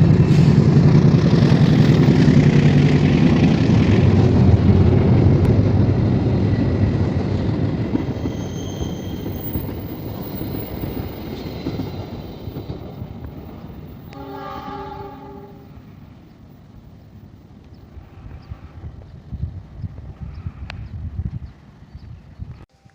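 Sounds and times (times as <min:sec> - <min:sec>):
train rumbling past: 0:00.0 - 0:22.7
train horn: 0:14.0 - 0:16.0.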